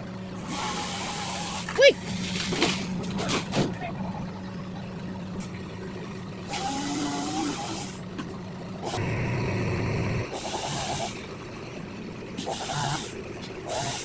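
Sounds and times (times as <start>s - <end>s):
engine running: 0.0s - 14.0s
loud rumble: 8.7s - 12.5s.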